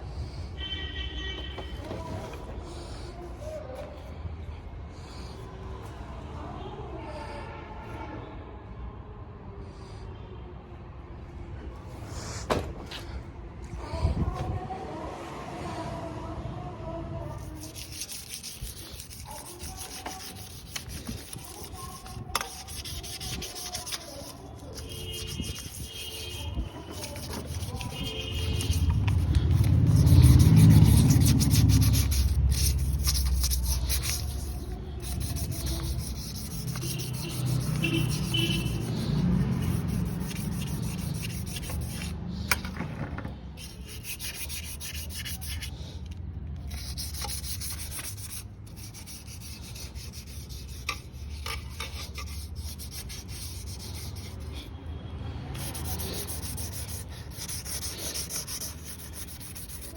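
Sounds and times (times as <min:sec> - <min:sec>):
rubbing and scraping: 0:17.3 - 0:45.8, 0:46.6 - 0:54.8, 0:55.5 - 0:59.9.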